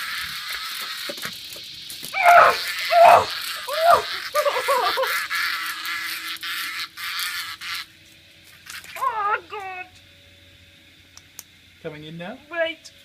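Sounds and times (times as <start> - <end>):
cicada buzzing: 0.0 - 10.0
person squealing: 2.2 - 5.2, 9.0 - 9.9.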